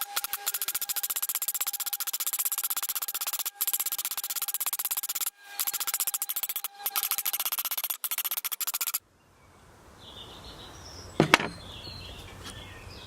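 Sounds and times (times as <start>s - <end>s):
hand file rasping on steel blade: 0.0s - 9.0s
knock: 11.2s - 11.6s.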